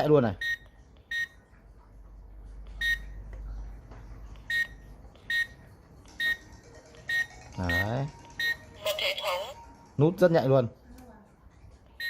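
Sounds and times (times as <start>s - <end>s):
short high keypad beeps: 6.2s - 6.4s, 7.1s - 8.7s.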